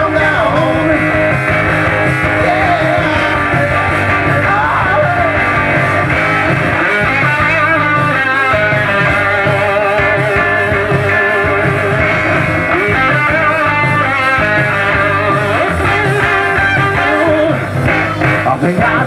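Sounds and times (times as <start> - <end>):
person singing: 0.0 - 5.7, 7.0 - 19.0
electric guitar: 0.0 - 19.0
rock band playing: 0.0 - 19.0.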